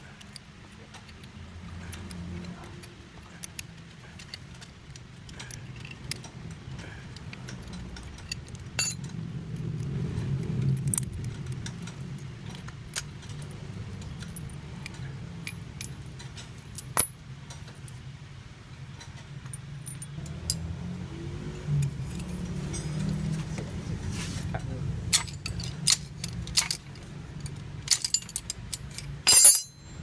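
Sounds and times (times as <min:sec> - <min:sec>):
metal tools clinking: 0:00.2 - 0:09.2, 0:10.8 - 0:18.0, 0:21.8 - 0:23.5, 0:25.1 - 0:30.0.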